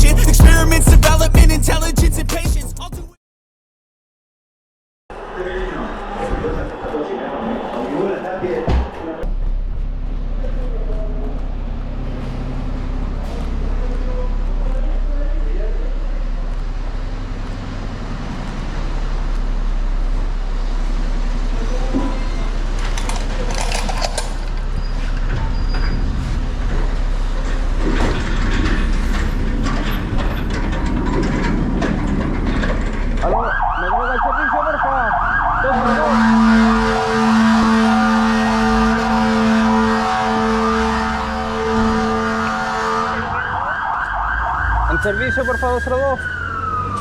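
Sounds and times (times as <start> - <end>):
low engine rumble: 0.0 - 3.0, 9.2 - 47.0
knocks and clatter: 22.0 - 33.4
fire engine siren warbling: 33.2 - 47.0.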